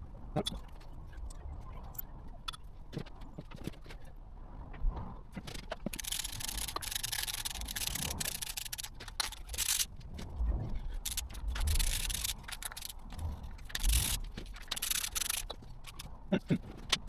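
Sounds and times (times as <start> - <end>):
rubbing scrape: 5.7 - 16.2.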